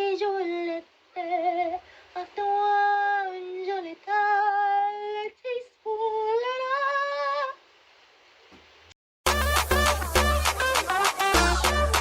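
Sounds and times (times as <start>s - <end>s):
upbeat music with heavy bass: 9.3s - 12.0s.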